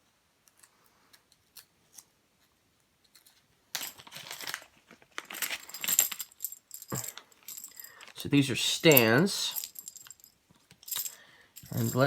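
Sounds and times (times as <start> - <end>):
small plastic pieces clinking: 3.0 - 8.2.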